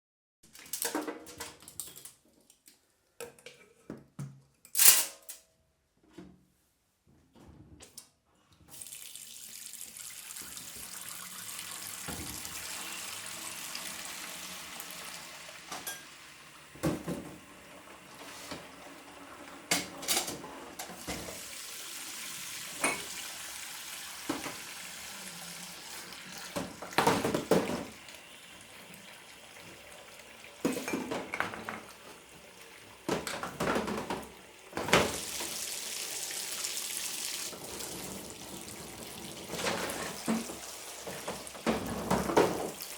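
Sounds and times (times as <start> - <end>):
tap running: 9.8 - 14.1, 24.2 - 24.8
dishes clattering in sink: 15.7 - 16.2, 16.8 - 17.4, 19.7 - 21.4, 22.7 - 23.3, 24.2 - 24.7, 26.4 - 28.0, 30.6 - 32.2, 33.0 - 35.5, 39.2 - 42.9.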